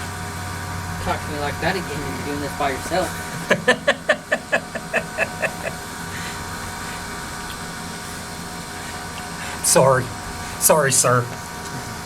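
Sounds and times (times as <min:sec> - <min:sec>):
steady low hum: 0:00.0 - 0:12.0
person laughing: 0:03.3 - 0:06.3.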